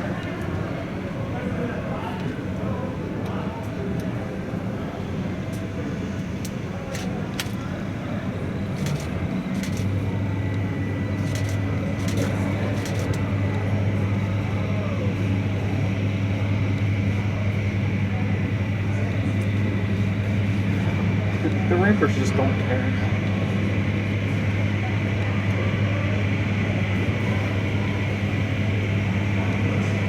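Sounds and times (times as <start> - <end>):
murmur of voices: 0.0 - 30.0
steady low hum: 0.0 - 30.0
scattered clicks: 6.4 - 7.6, 8.8 - 10.6, 11.2 - 13.6.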